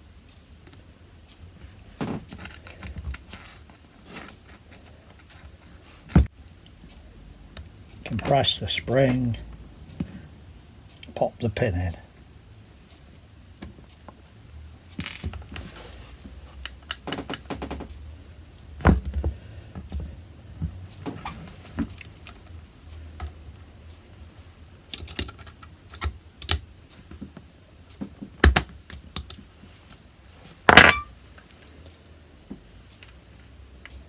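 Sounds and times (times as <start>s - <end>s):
small steel parts clicking: 24.9s - 26.6s.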